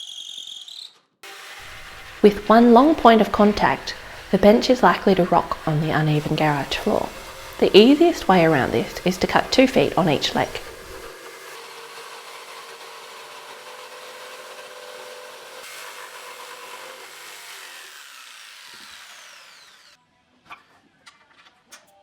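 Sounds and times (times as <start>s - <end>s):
power saw cutting wood: 0.0s - 20.0s
motor spinning down whine: 1.6s - 11.2s.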